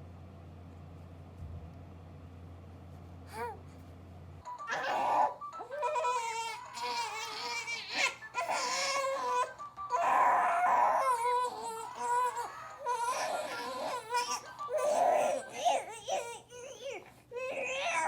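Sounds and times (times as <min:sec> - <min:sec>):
baby crying in wavering wails: 0:04.6 - 0:18.0.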